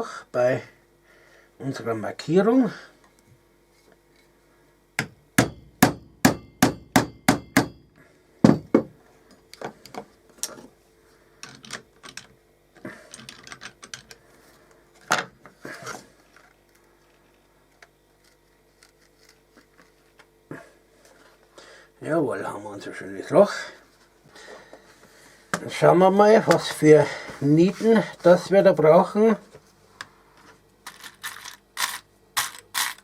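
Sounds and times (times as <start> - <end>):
hammer striking hole punch: 5.0 - 8.9.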